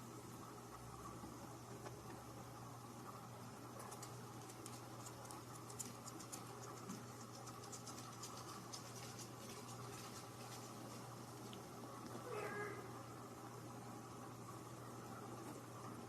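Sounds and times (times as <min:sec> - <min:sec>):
steady low hum: 0:00.0 - 0:16.0
faint scratching with ticks: 0:03.8 - 0:11.2.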